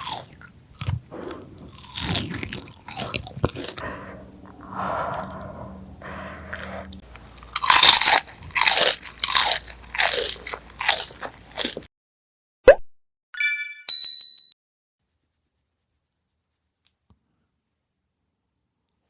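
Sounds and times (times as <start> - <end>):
crunching crisp food: 0.0 - 3.8, 6.5 - 11.9
chiming sound effect: 13.4 - 14.6.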